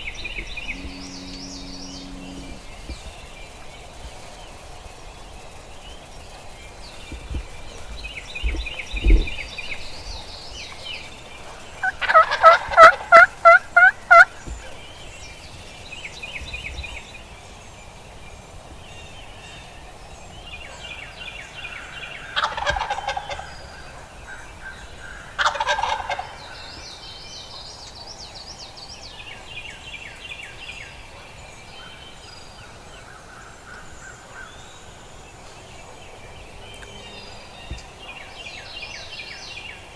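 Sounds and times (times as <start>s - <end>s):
songbirds singing faintly: 0.0s - 39.9s
turkey gobbling: 11.4s - 14.4s, 22.3s - 24.5s, 25.4s - 26.4s.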